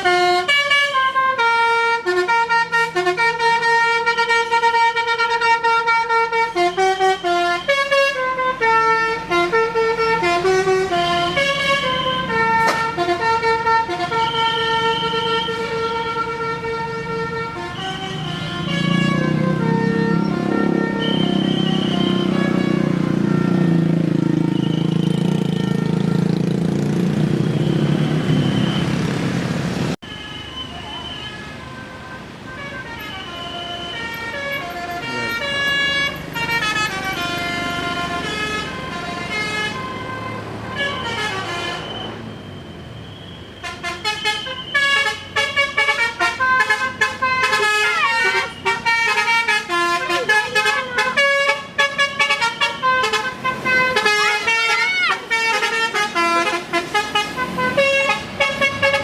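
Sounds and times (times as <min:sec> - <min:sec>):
musical air horns playing tunes: 0:00.0 - 0:26.5, 0:31.1 - 0:42.2, 0:43.6 - 0:59.0
bus engine running: 0:33.2 - 0:42.0.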